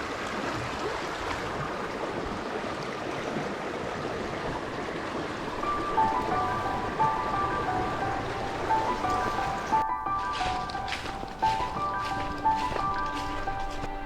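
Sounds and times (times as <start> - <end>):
stream water rushing over rocks: 0.0 - 14.0
background music sustained notes: 5.4 - 14.0.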